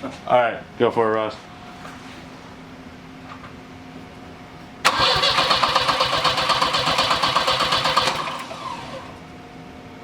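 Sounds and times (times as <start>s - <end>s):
starter motor cranking engine: 4.8s - 9.2s.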